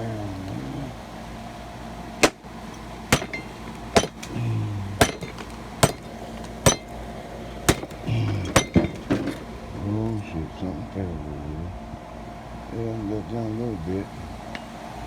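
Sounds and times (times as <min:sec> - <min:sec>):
axe striking metal post: 0:02.2 - 0:07.0, 0:07.7 - 0:09.4.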